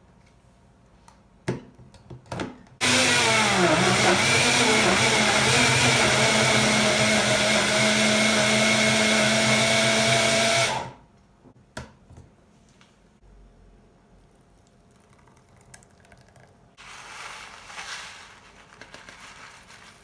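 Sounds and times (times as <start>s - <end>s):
electric motor whining: 2.8s - 10.9s.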